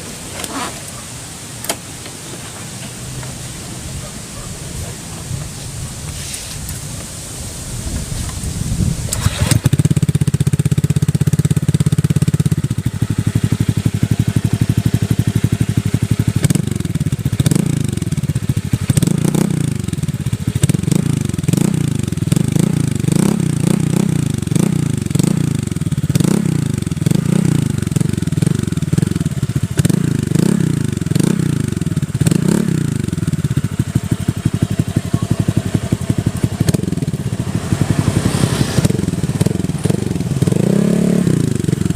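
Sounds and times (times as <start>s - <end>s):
scooter engine with throttle blips: 0.0s - 6.9s, 7.8s - 41.9s.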